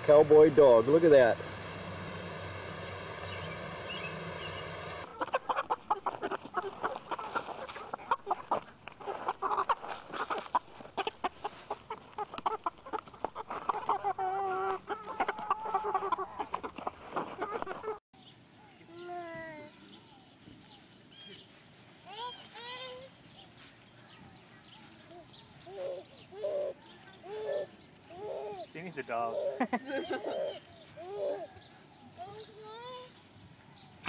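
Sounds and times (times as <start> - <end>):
steady hum: 0.0 - 5.1
chickens clucking: 0.0 - 18.0
wavering hen calls: 0.0 - 18.0.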